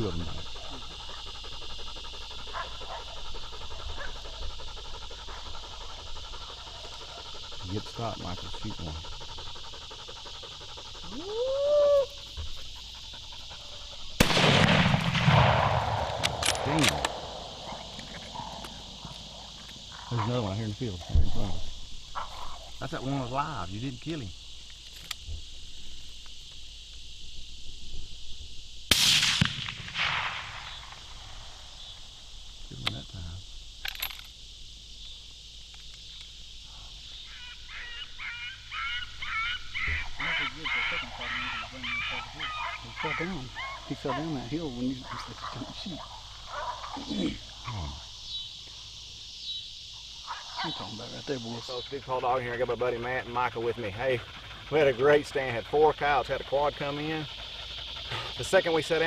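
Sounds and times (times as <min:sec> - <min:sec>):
dog panting: 0:00.0 - 0:11.5, 0:12.1 - 0:14.2, 0:51.5 - 0:59.0
insects buzzing: 0:00.0 - 0:59.0
rifle shot with echo: 0:14.2 - 0:17.5, 0:28.9 - 0:31.1.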